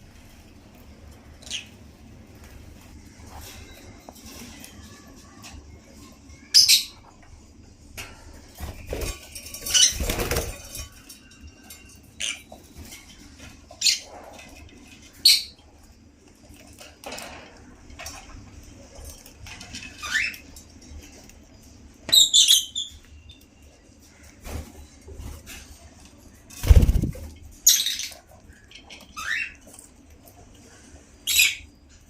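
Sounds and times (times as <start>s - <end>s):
wings flapping and rustling: 8.0s - 22.2s, 24.0s - 31.2s.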